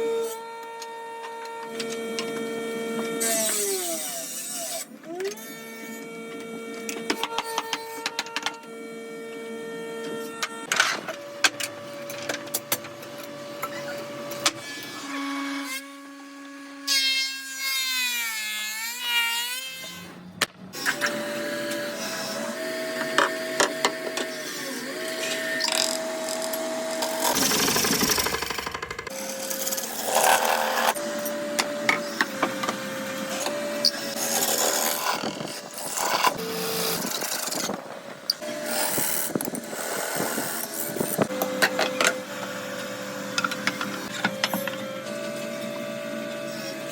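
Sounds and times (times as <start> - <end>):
power tool motor whine: 20.7 - 46.9.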